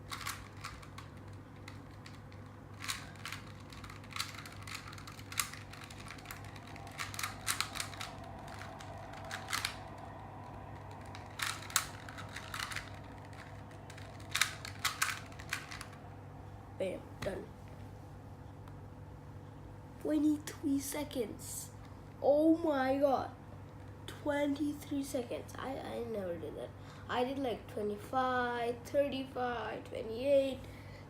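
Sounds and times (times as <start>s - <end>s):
puzzle cube plastic clicks: 0.0s - 10.1s, 10.8s - 16.0s.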